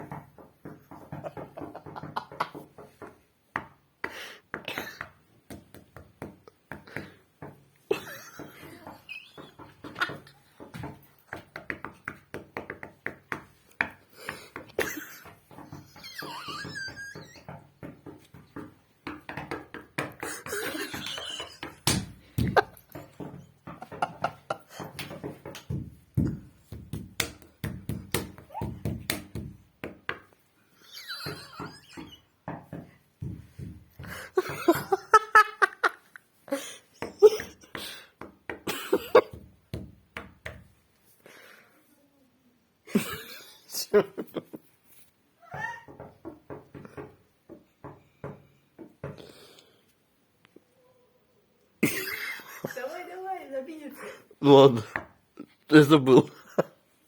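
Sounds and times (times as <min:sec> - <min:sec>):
knocking on a wall: 0:14.8 - 0:30.2, 0:38.2 - 0:40.7.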